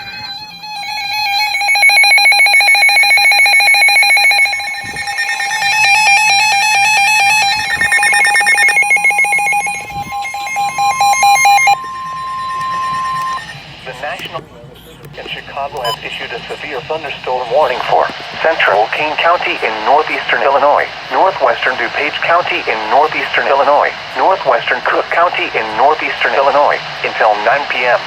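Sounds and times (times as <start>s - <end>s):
electronic beeping and warbling alarms: 0.0s - 14.4s
steady alarm tone: 0.0s - 14.4s.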